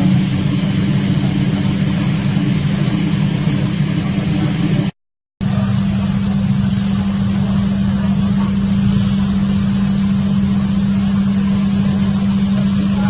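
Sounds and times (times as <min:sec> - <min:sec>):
low droning hum: 0:00.0 - 0:13.0
hiss: 0:05.5 - 0:13.0.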